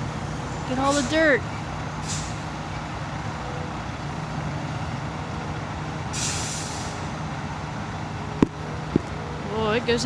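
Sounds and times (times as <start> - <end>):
diesel construction machinery running: 0.0 - 10.0
air hiss: 2.0 - 2.4, 6.2 - 7.1.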